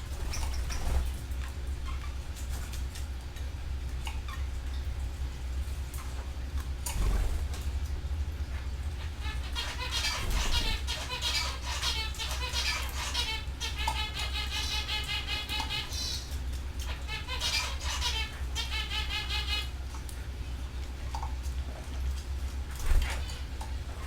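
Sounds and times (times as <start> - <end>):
canaries singing trills: 0.0 - 3.0, 8.5 - 20.7, 22.8 - 24.0
steady low hum: 0.0 - 24.0.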